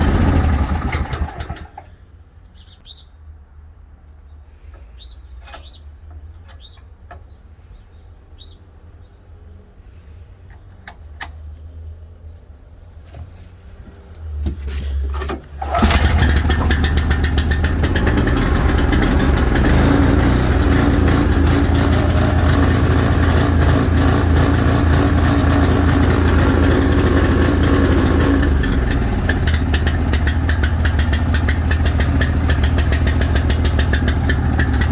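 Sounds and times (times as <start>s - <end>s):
engine rough idle: 0.0s - 1.9s, 15.1s - 34.9s
vehicle engine cranking and starting: 0.0s - 2.0s, 14.7s - 34.9s
bird chirps: 2.5s - 3.3s, 4.2s - 9.2s.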